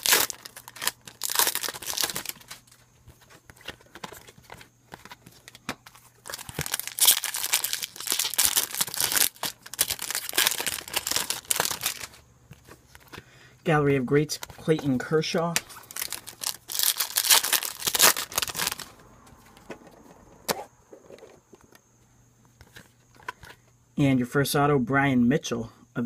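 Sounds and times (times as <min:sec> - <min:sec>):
foil wrappers tearing and crinkling: 0:00.0 - 0:04.6, 0:05.4 - 0:12.2, 0:15.5 - 0:18.9.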